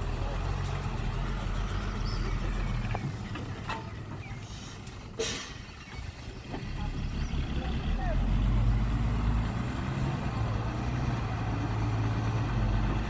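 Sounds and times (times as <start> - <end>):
heavy engine humming: 0.0 - 13.0
short sharp hiss: 4.4 - 5.6.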